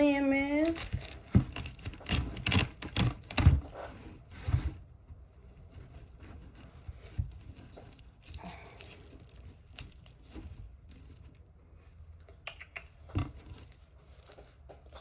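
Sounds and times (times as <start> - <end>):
plastic packaging rustling: 0.6 - 4.8, 6.0 - 12.0, 13.3 - 14.7
plastic packaging knocks and clicks: 0.7 - 3.8.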